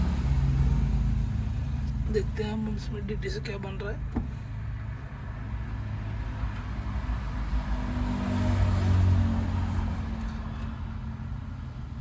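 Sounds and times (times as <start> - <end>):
vehicle engine running: 0.0 - 5.5.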